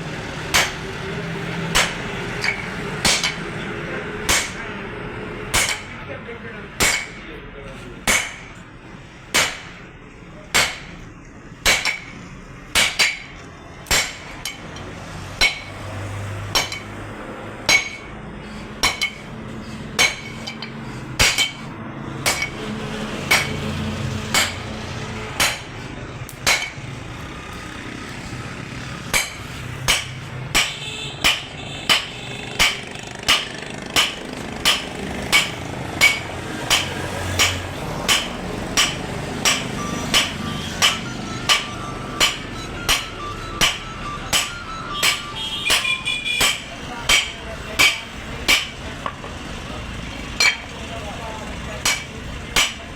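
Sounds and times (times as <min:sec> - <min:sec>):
hammer blows on anvil: 0:17.7 - 0:18.2, 0:23.3 - 0:23.7, 0:24.3 - 0:24.8, 0:29.1 - 0:48.8.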